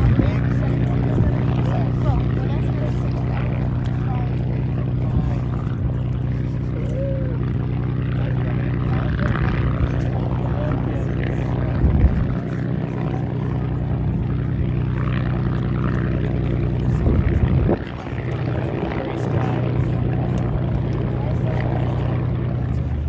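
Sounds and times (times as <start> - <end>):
propeller aircraft engine running: 0.0 - 23.0.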